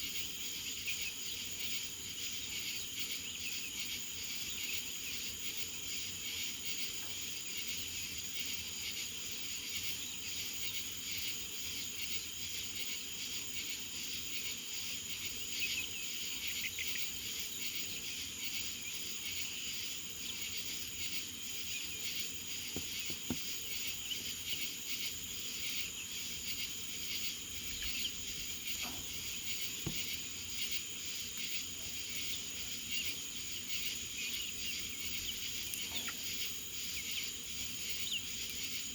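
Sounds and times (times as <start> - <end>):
insect chorus trilling: 0.0 - 38.9
faint knocks: 22.8 - 23.5, 29.8 - 30.1.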